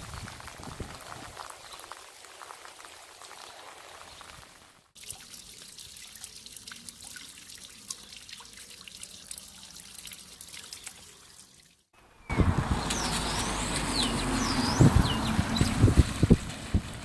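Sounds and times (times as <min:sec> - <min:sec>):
rain hiss: 0:00.0 - 0:04.9
rain drops dripping and tapping: 0:00.0 - 0:05.4.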